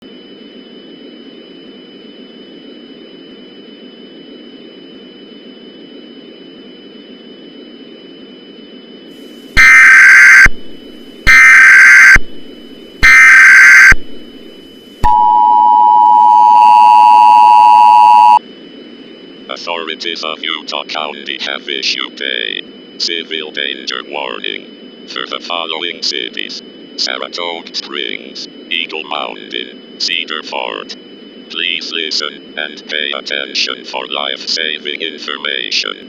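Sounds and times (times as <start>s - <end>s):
two-tone attention signal: 9.6s - 10.5s, 11.3s - 12.2s, 13.0s - 14.0s, 15.0s - 18.4s
buzzy digital data bursts: 9.6s - 10.6s, 11.2s - 12.2s, 13.0s - 14.0s.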